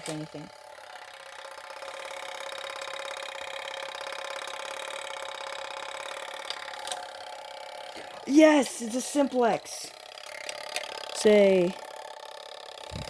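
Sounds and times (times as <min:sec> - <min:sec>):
fire alarm code mechanism whirring: 0:00.0 - 0:13.0.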